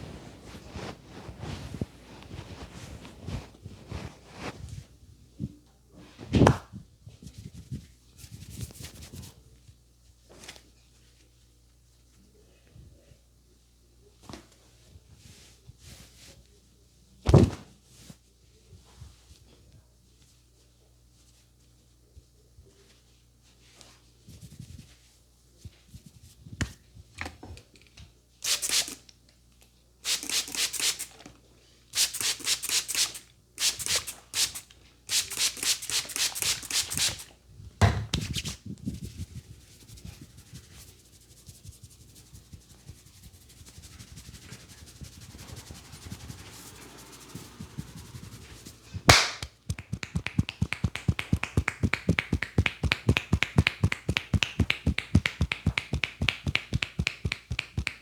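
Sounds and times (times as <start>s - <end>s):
hands rubbing: 0.0s - 4.6s, 32.0s - 37.3s, 39.8s - 58.0s
hands tapping and slapping on head: 47.7s - 58.0s
sharp snap: 49.1s - 58.0s.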